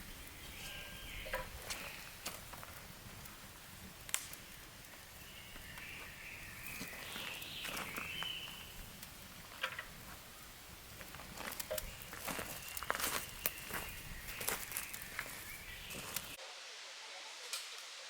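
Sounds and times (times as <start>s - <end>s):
dry twigs snapping: 4.0s - 4.5s.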